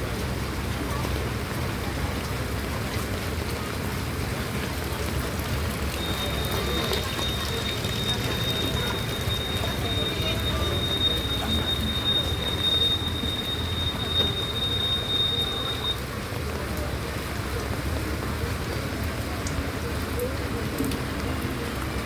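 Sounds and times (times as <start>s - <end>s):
steady rain falling: 0.0s - 22.0s.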